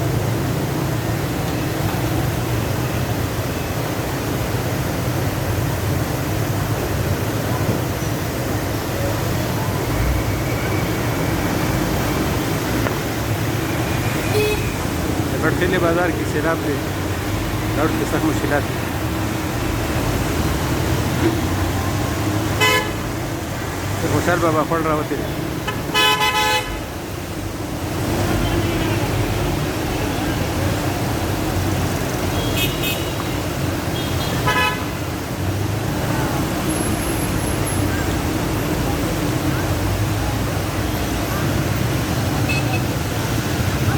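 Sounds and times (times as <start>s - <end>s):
floodwater rushing: 0.0s - 43.9s
vehicle horns honking: 14.2s - 14.8s, 22.6s - 23.1s, 25.7s - 26.8s, 32.3s - 35.0s.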